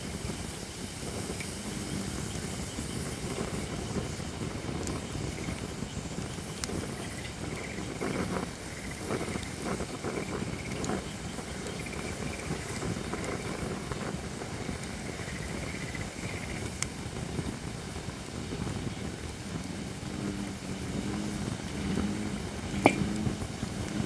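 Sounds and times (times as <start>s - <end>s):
campfire flames crackling: 0.0s - 24.0s
firewood pop: 22.7s - 23.4s.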